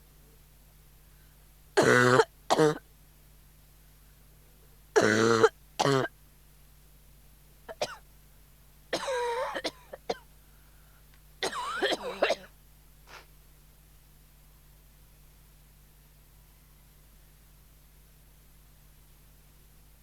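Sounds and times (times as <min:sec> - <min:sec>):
person coughing: 0:01.8 - 0:02.8, 0:05.0 - 0:06.1, 0:07.7 - 0:08.0, 0:09.0 - 0:10.2, 0:11.4 - 0:12.5.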